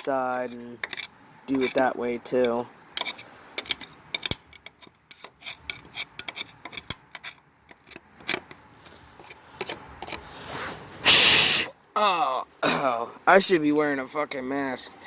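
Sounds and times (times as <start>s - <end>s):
small scrapes: 0.0s - 11.6s.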